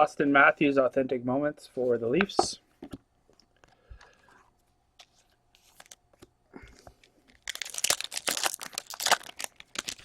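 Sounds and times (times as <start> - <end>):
foil wrapper crinkling and tearing: 5.1 - 6.0, 7.0 - 10.0.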